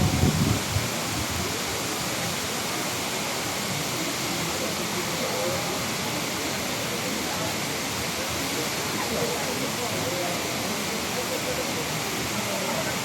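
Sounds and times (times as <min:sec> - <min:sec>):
waterfall roaring: 0:00.0 - 0:13.0.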